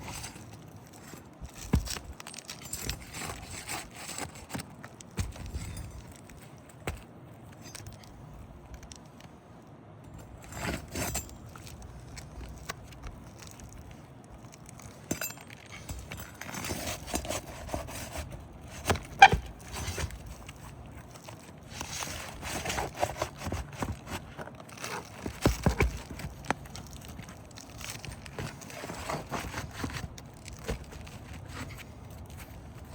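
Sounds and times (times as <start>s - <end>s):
tools scraping roof shingles: 0.0s - 9.0s, 10.2s - 32.9s
clicks clinks and knocks: 0.0s - 9.4s, 10.0s - 32.9s.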